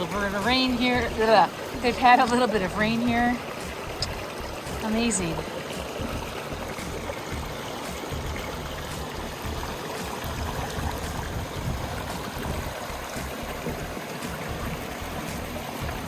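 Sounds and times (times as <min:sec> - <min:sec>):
low rumbles: 0:00.0 - 0:16.0
water running over rocks: 0:00.0 - 0:16.0.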